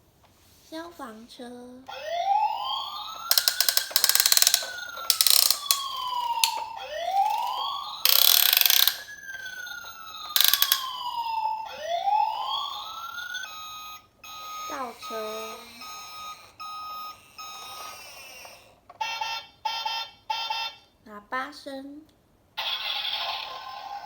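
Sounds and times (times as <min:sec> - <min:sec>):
toy electronic siren wailing: 0:01.9 - 0:20.8
ratcheting clicks of toy gears: 0:03.2 - 0:09.2, 0:10.3 - 0:11.0.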